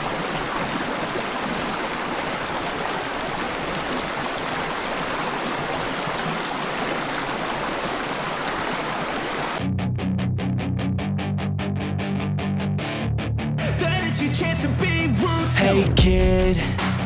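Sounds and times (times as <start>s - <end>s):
stream rushing over rocks: 0.0s - 9.6s.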